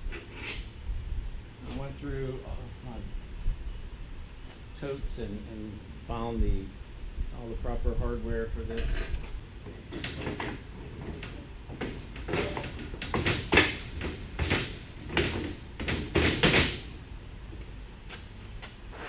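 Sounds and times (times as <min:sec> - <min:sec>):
metal parts scraping and clunking: 0:08.7 - 0:16.9.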